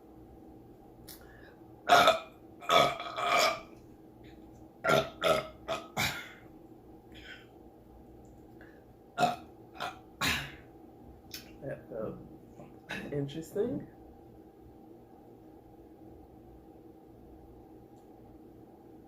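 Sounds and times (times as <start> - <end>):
woman burping loudly: 1.9 - 3.7, 4.8 - 6.4, 9.2 - 10.6.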